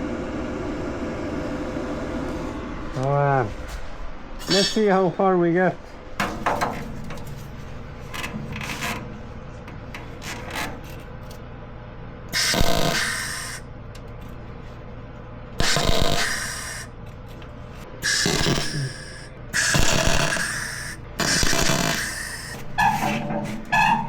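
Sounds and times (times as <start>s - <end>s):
metal knocks: 6.2s - 7.2s
welder crackling sizzle: 12.4s - 13.6s, 15.6s - 16.9s, 18.1s - 22.6s.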